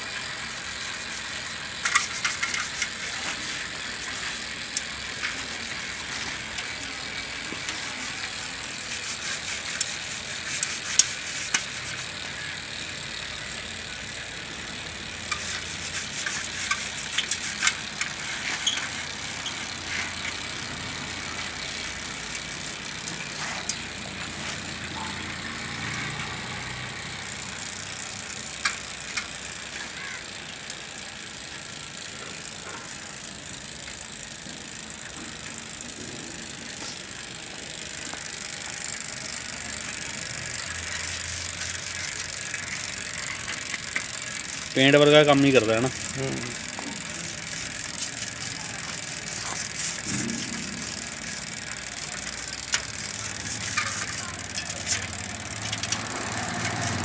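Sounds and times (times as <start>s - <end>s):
metallic clicks and rattles: 0.8s - 8.2s, 9.0s - 12.5s, 14.5s - 25.3s, 28.5s - 30.8s, 39.8s - 57.0s.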